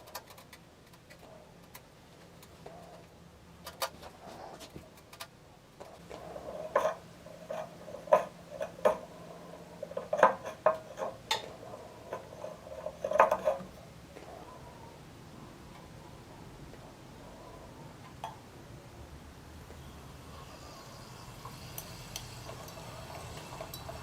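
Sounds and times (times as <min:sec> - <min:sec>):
metal parts and tools clinking: 0:20.5 - 0:24.0.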